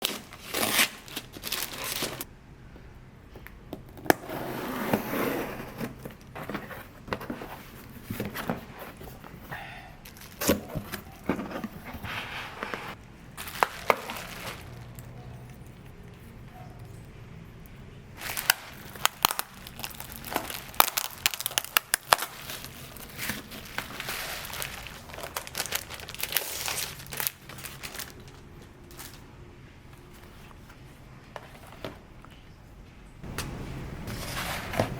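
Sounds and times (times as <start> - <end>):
plastic and paper crinkling: 0.0 - 2.3, 5.8 - 17.0, 18.2 - 29.3.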